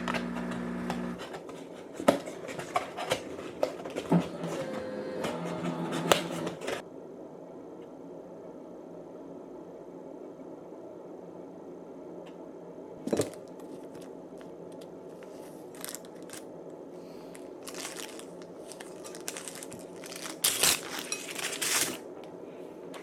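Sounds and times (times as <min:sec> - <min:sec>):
steady low hum: 0:00.0 - 0:01.2
packaging crinkling and rustling: 0:01.1 - 0:06.8, 0:13.1 - 0:16.5, 0:17.2 - 0:22.3.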